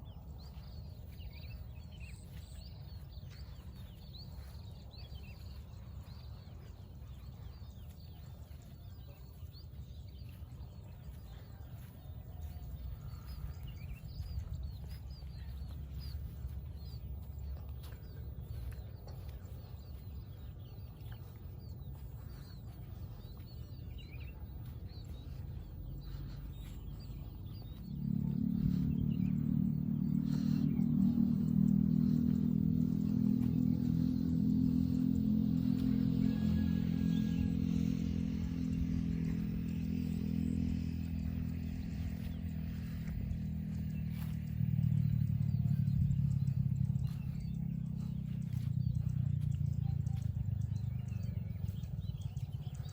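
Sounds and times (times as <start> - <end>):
faint bird chirps: 0.0 - 52.9
small engine humming: 0.0 - 52.9.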